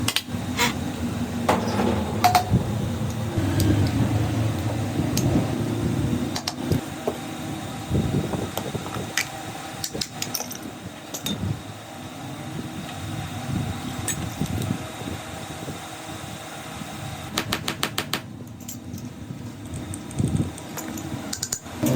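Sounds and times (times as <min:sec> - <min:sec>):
low hum: 0:00.1 - 0:15.7
tools clicking and knocking: 0:06.3 - 0:06.8, 0:09.2 - 0:11.4, 0:17.4 - 0:21.7.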